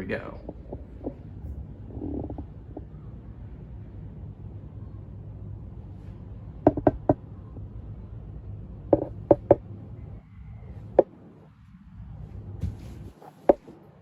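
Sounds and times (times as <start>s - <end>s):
low steady hum: 0.0s - 14.0s
sharp knocks: 6.7s - 7.2s, 8.9s - 9.6s.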